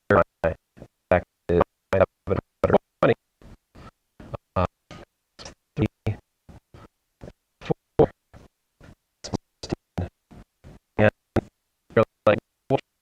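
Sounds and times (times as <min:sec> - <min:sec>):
garbled man's voice: 0:00.0 - 0:03.2, 0:04.2 - 0:06.2, 0:07.2 - 0:08.5, 0:09.2 - 0:13.0.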